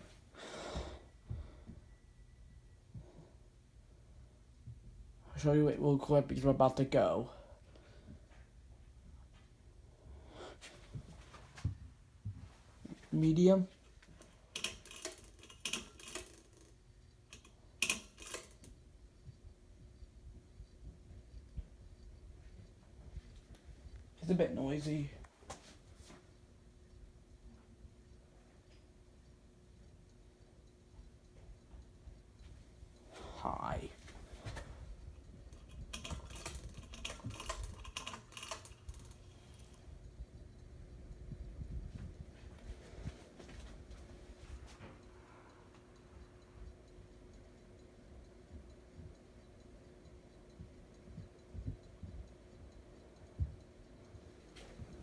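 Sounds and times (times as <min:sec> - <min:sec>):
ceiling fan running: 0:00.0 - 0:55.0
sharp clicks: 0:14.2 - 0:18.8, 0:35.2 - 0:39.8.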